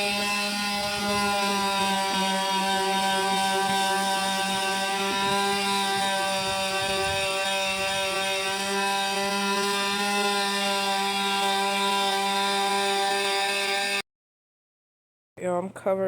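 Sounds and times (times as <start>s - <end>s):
power sander on wood: 0.0s - 14.0s.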